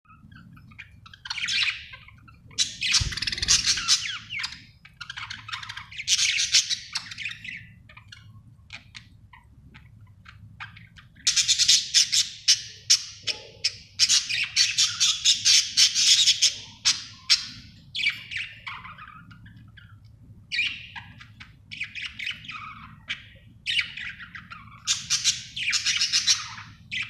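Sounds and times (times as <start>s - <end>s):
steady low hum: 0.1s - 6.0s
budgerigar chirping: 0.6s - 8.9s
brief low thump: 3.0s - 3.7s.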